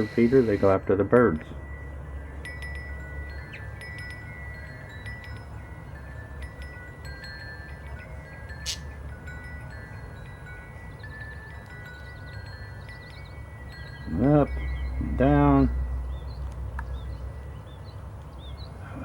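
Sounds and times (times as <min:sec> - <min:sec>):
chimes ringing: 0:00.0 - 0:16.4.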